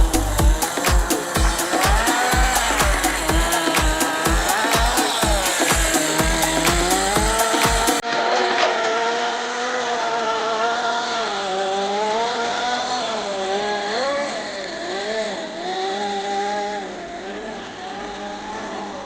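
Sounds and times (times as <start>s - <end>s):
music with steady beat: 0.0s - 8.0s
small engine revving: 0.0s - 19.0s.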